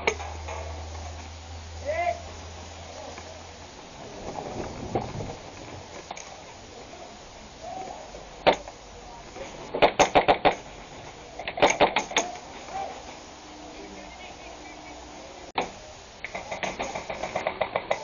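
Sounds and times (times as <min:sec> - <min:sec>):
airsoft rifle shots: 0:09.7 - 0:10.7, 0:11.4 - 0:12.4, 0:15.6 - 0:18.0.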